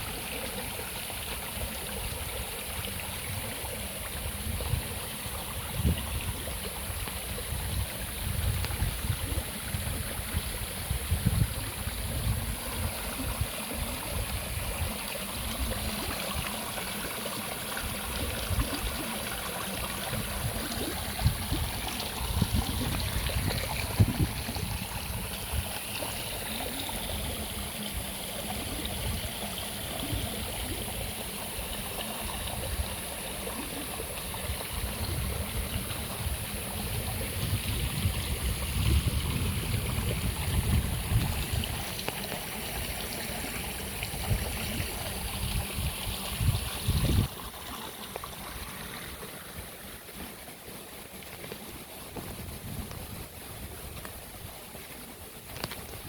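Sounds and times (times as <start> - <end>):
stream flowing: 0.0 - 56.0.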